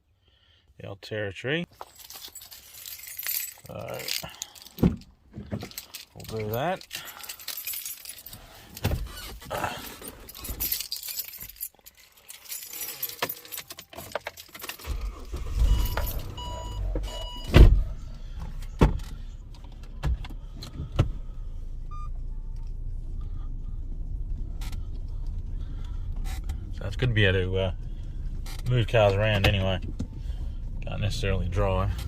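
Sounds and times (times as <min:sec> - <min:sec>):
keys jangling: 0:01.7 - 0:17.4
car engine starting and idling: 0:14.6 - 0:32.0.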